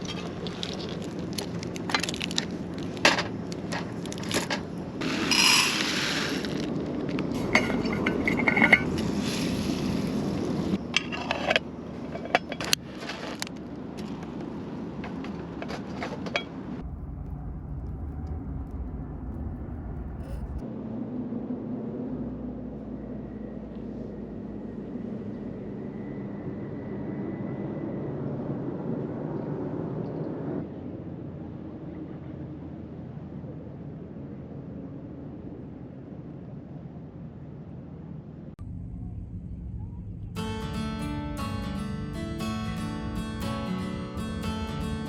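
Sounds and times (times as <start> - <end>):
steady low rumble: 0.0 - 10.8, 16.6 - 45.0
dishes and utensils clinking: 7.4 - 9.2.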